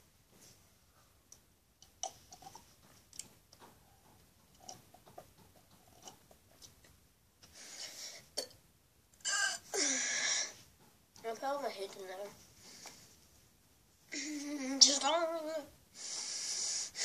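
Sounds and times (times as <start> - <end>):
short breath: 9.8 - 10.6, 15.9 - 17.0.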